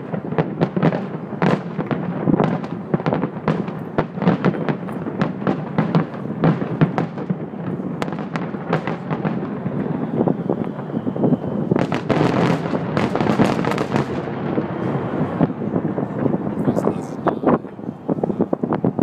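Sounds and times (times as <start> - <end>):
fireworks bangs: 0.0 - 19.0
fireworks crackle: 0.0 - 19.0
faint falling whistle: 9.8 - 12.6.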